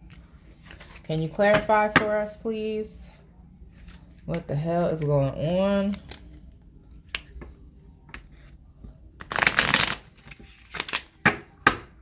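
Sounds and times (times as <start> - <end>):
cards shuffling: 9.2 - 11.9.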